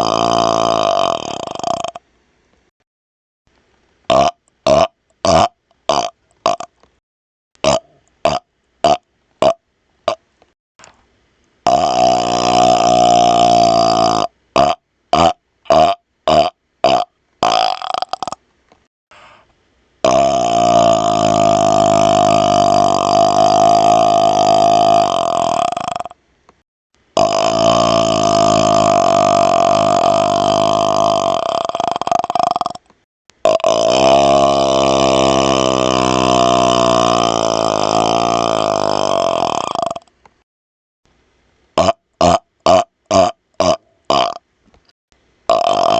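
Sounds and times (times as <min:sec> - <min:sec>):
man burping: 0:00.0 - 0:02.0, 0:04.1 - 0:06.7, 0:07.6 - 0:10.2, 0:11.7 - 0:18.4, 0:20.0 - 0:26.2, 0:27.2 - 0:40.1, 0:41.8 - 0:44.4, 0:45.5 - 0:45.9.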